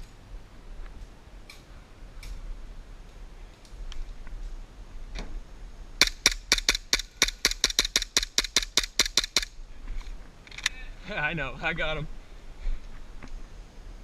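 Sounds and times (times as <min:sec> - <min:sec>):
airsoft gun rapid firing: 0:06.0 - 0:09.5.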